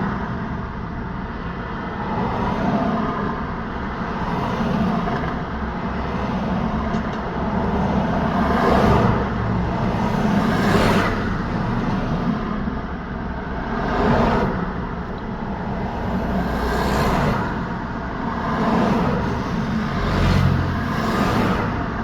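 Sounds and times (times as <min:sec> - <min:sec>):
traffic hum: 0:00.0 - 0:22.0
vehicle passing close by: 0:18.4 - 0:22.0.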